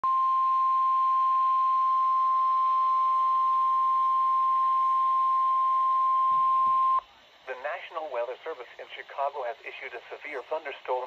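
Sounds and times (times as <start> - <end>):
steady high alarm tone: 0.0 - 7.0.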